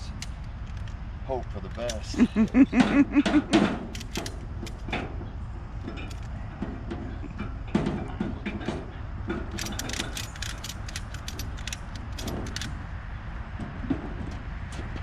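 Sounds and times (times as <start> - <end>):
steady low rumble: 0.0 - 15.0
ratchet strap clicking: 3.9 - 4.8, 9.5 - 12.8.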